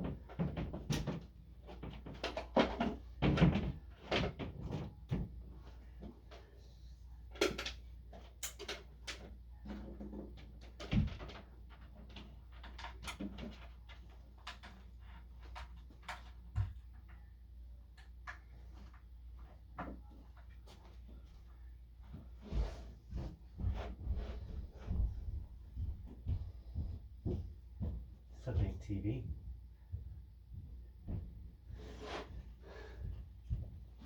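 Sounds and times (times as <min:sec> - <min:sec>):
hard objects knocking and clunking: 0:00.0 - 0:05.4, 0:07.4 - 0:17.2.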